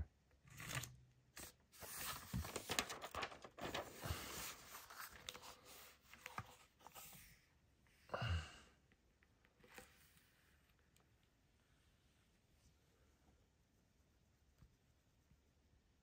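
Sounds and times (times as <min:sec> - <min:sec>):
paper rustling and crinkling: 0:00.5 - 0:07.3.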